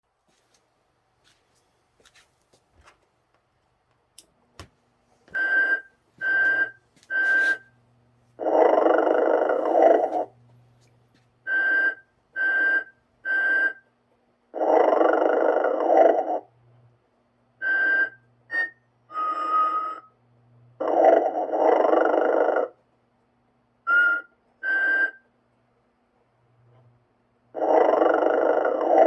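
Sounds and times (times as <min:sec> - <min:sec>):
toy snoring with whistling tones: 0:08.4 - 0:10.3, 0:11.5 - 0:13.8, 0:14.6 - 0:16.5, 0:17.6 - 0:20.2, 0:20.8 - 0:22.8, 0:23.9 - 0:25.3, 0:27.6 - 0:29.0.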